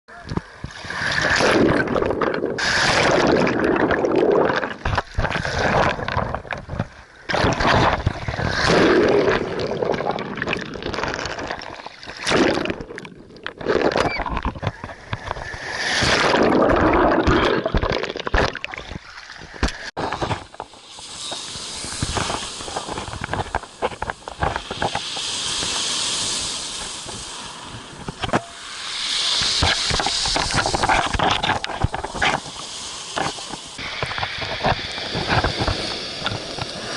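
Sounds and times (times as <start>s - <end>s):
sea waves surging and sloshing: 0.2s - 36.9s.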